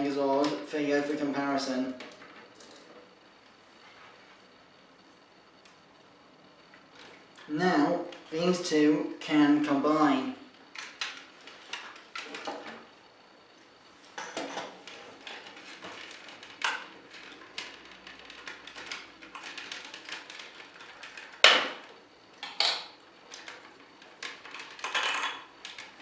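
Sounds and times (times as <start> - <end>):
plastic toy parts clicking: 15.3 - 21.8, 22.4 - 23.6, 24.2 - 26.0.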